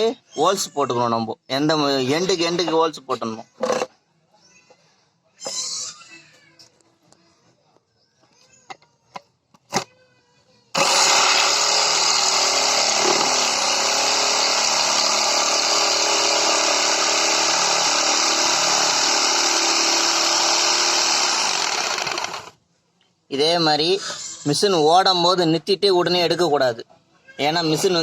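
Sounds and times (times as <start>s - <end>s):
power tool running: 10.8s - 22.6s.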